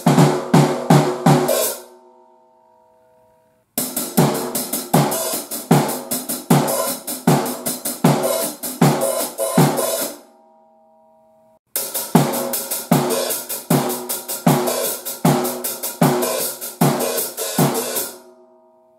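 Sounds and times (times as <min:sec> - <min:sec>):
drum kit groove: 0:00.0 - 0:01.9, 0:03.8 - 0:10.2, 0:11.7 - 0:18.2.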